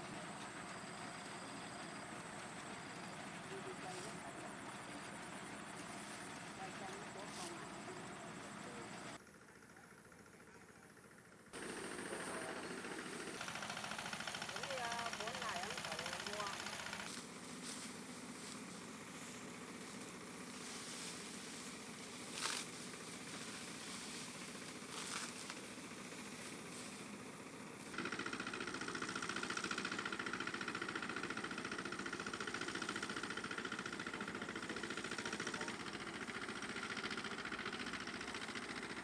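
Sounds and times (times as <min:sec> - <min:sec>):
engine running with whine: 0:00.0 - 0:09.2, 0:11.6 - 0:39.0.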